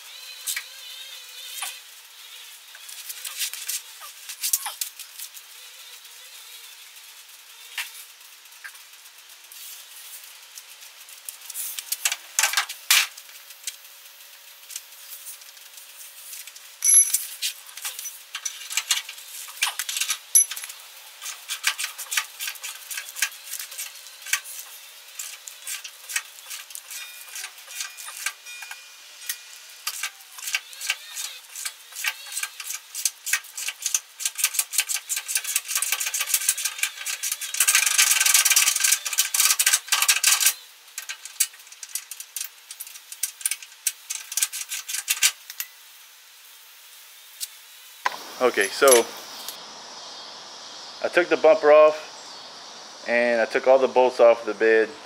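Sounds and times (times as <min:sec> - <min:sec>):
metal hand tools clinking: 0:16.8 - 0:24.5, 0:25.2 - 0:41.6.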